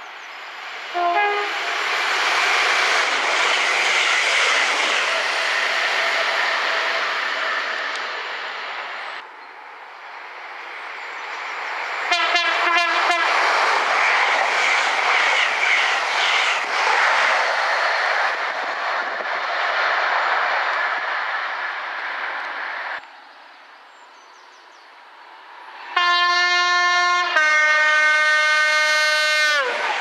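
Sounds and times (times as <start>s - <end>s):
train passing at speed: 0.0s - 30.0s
train horn blast: 0.9s - 1.8s, 12.1s - 13.3s, 26.0s - 29.8s.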